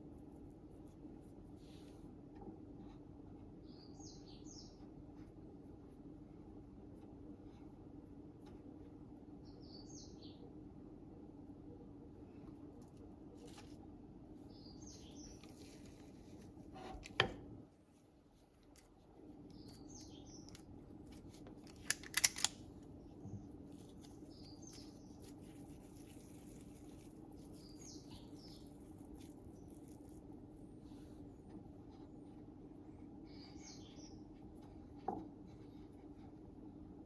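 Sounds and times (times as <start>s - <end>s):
steady low hum: 0.0s - 37.0s
small bird chirping: 3.6s - 5.0s, 9.4s - 10.5s, 14.4s - 16.0s, 19.4s - 21.3s, 22.9s - 30.2s, 31.9s - 35.0s
quick clicks: 21.6s - 22.7s.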